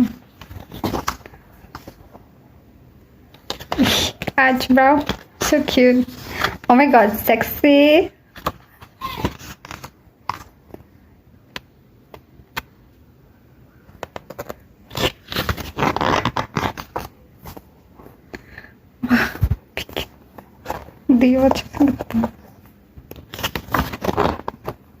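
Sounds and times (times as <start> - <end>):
paper rustling: 0.3 - 2.3, 3.3 - 7.2, 8.3 - 10.8, 13.9 - 18.6, 19.4 - 25.0
paper clicks and scrapes: 5.0 - 6.8, 8.4 - 10.8, 14.0 - 18.6, 19.4 - 24.9.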